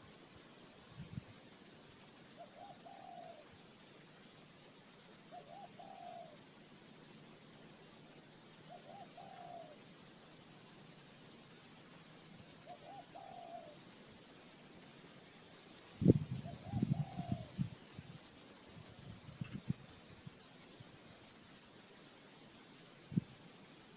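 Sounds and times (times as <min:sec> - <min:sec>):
dove cooing: 0:02.4 - 0:03.6, 0:05.3 - 0:06.6, 0:08.7 - 0:09.9, 0:12.6 - 0:13.9, 0:16.1 - 0:17.8.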